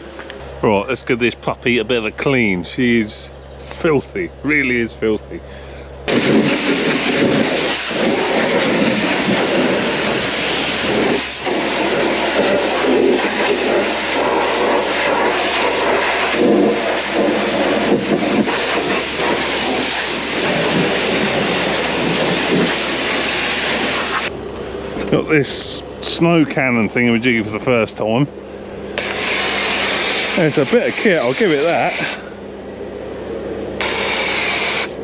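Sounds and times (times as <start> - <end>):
pressure washer spraying: 6.1 - 24.3, 29.0 - 32.2, 33.8 - 35.0.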